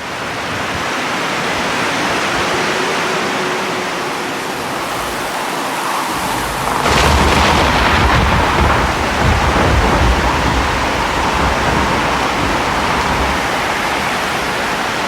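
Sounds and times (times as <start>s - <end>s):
heavy rain: 0.0s - 15.0s
wind: 0.0s - 15.0s
thunder rolling and cracking: 6.1s - 15.0s.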